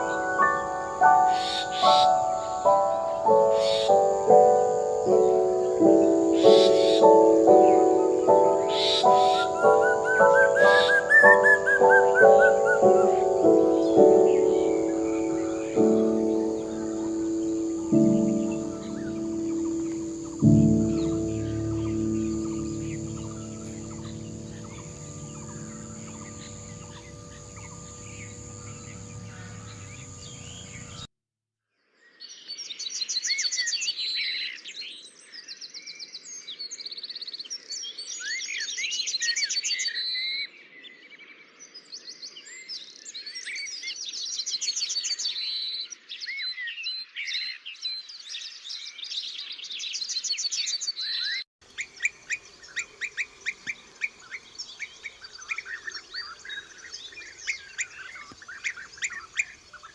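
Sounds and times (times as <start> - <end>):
small birds chirping and trilling: 0.0 - 31.1, 32.0 - 59.9
steady hum of held tones: 0.0 - 31.1.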